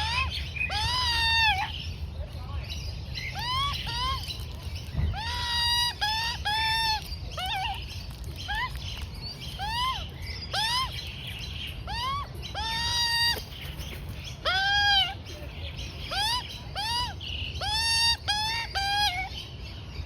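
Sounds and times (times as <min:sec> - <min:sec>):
young magpie begging calls: 0:00.0 - 0:01.9, 0:03.2 - 0:04.4, 0:05.1 - 0:08.8, 0:09.5 - 0:11.1, 0:11.8 - 0:13.5, 0:14.4 - 0:15.3, 0:16.0 - 0:19.4.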